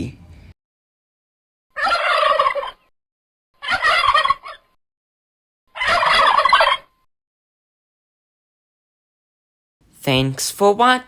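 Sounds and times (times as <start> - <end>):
turkey gobbling: 1.7 - 2.9, 3.6 - 4.8, 5.7 - 7.0.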